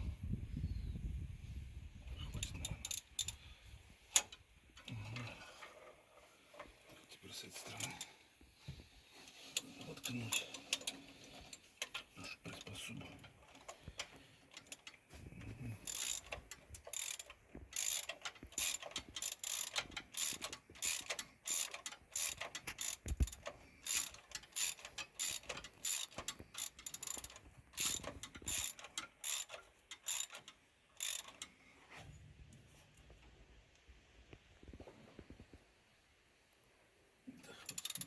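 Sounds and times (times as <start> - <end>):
ratchet wrench clicking: 2.4 - 3.4, 13.5 - 15.0, 15.8 - 31.5, 37.6 - 38.0.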